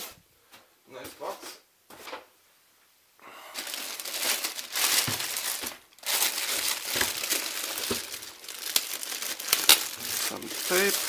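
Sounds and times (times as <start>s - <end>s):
packaging crinkling: 3.5s - 11.0s.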